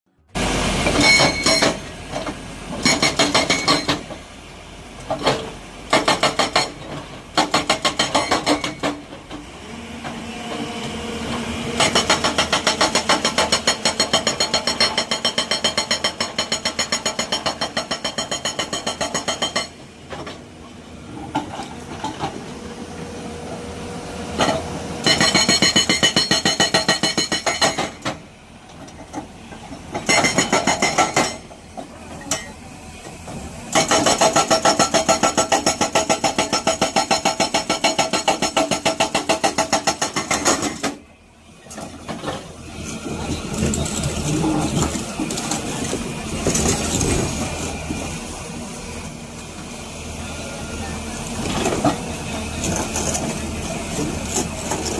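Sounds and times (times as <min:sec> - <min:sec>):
machinery running: 0:28.9 - 0:54.9.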